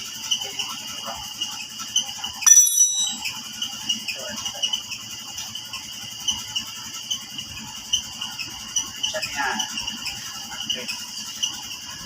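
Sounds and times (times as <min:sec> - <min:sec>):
loud high-pitched tone: 0:02.5 - 0:03.3.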